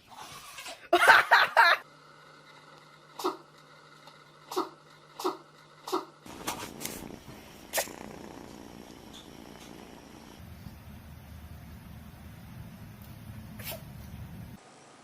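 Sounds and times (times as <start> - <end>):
pet sneezing: 4.5 - 7.0, 13.6 - 13.9
small snuffs: 4.5 - 8.1, 13.6 - 14.1
low steady rumble: 6.3 - 14.6.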